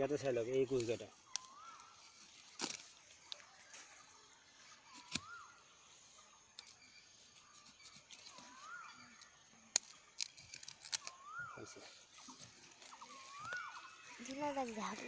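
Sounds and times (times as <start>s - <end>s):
bird whistled call: 1.2s - 2.4s, 4.8s - 5.8s, 6.6s - 9.3s, 10.9s - 15.0s.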